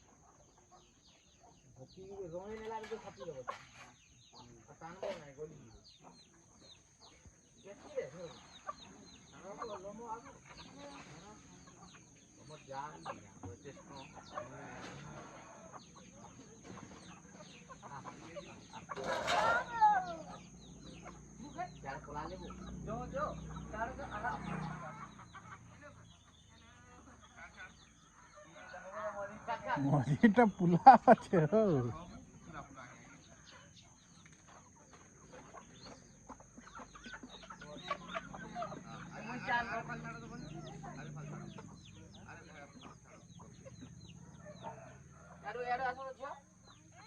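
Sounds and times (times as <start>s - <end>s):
chickens clucking: 0.0s - 47.0s
chicken squawk: 17.7s - 21.3s.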